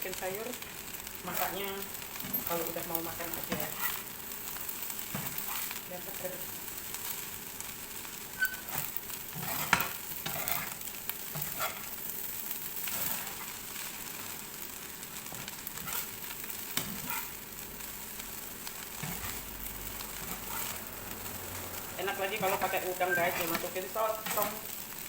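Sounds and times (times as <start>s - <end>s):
rice sizzling in a hot pan: 0.0s - 25.0s
spatula scraping a pan: 1.3s - 5.9s, 8.0s - 14.5s, 15.2s - 24.8s.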